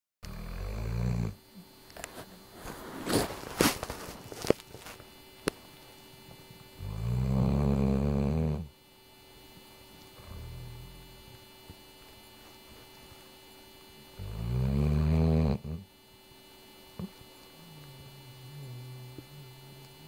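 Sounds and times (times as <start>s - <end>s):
dog snoring: 0.2s - 1.4s, 6.8s - 8.8s, 10.1s - 11.4s, 14.1s - 15.9s, 17.0s - 20.0s.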